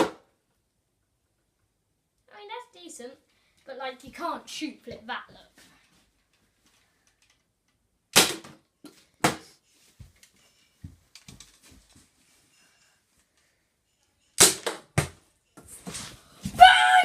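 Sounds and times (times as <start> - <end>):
toy blaster sharp pops: 8.1 - 8.6.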